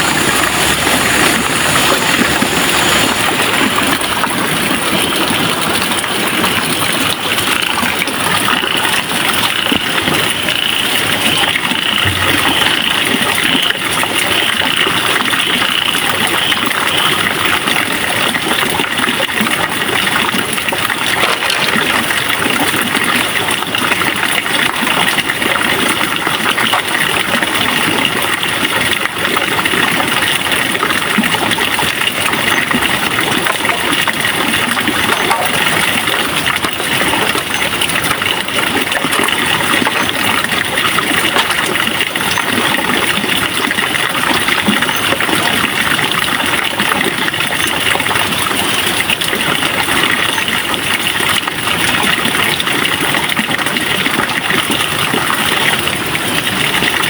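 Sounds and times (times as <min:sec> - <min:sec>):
steady rushing noise: 0:00.0 - 0:04.4.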